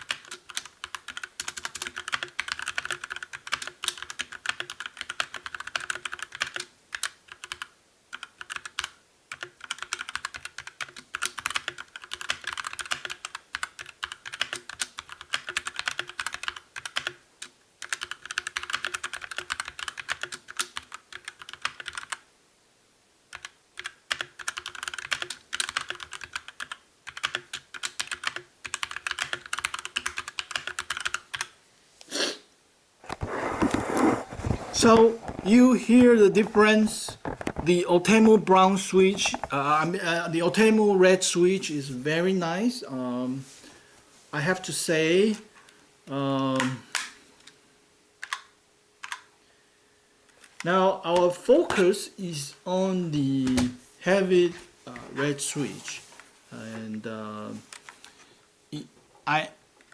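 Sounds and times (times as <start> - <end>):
mechanical keyboard typing: 0.0 - 22.2, 23.3 - 31.5, 48.2 - 49.3.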